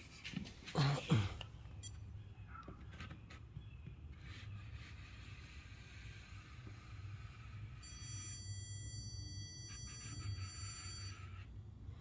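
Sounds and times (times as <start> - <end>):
stud finder high-pitched tone: 7.8 - 11.4.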